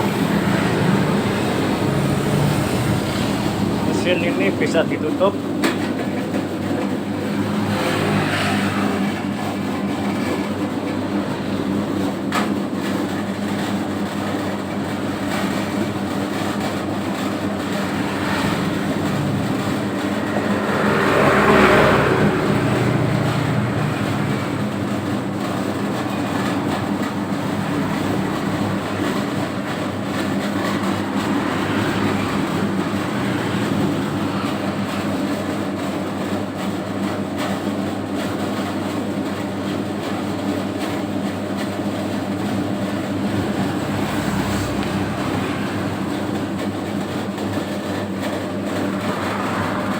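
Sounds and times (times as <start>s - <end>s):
dough mixer humming: 8.9s - 38.2s.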